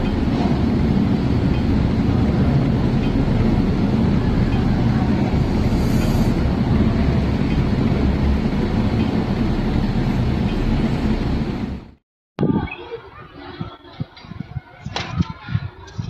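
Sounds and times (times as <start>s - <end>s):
avalanche deep rumble: 0.0s - 12.0s.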